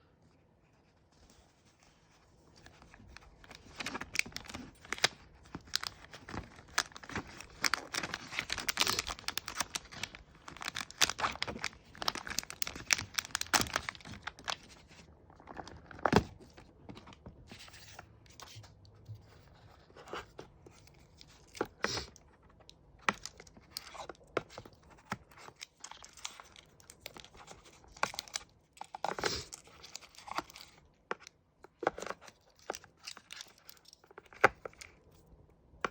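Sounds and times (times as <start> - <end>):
packaging crinkling and tearing: 2.5 - 18.0, 23.0 - 30.9, 31.7 - 35.0.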